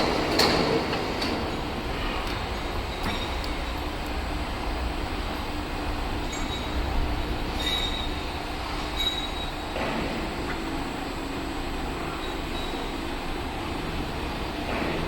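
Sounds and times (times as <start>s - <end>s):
rollers rumbling: 0.0s - 9.4s
welding rotator drive hum: 0.0s - 9.4s
high roller squeaks: 7.5s - 8.4s, 9.0s - 9.6s.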